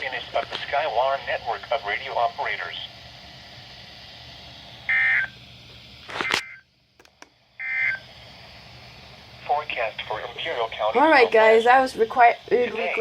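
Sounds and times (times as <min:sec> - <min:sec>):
radio receiver hiss: 0:00.0 - 0:13.0
short touch-tone beeps: 0:06.2 - 0:06.6.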